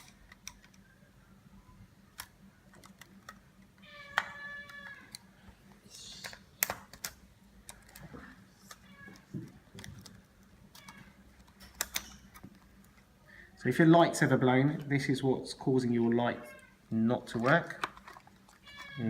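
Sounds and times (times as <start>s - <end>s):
plastic and metal parts clicking: 0.0s - 0.9s, 2.1s - 13.0s, 17.3s - 19.0s
cat meowing: 18.6s - 19.0s.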